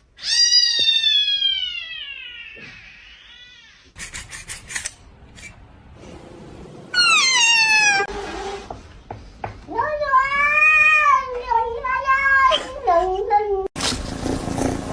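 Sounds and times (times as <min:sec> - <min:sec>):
cat meowing: 0:07.0 - 0:08.1.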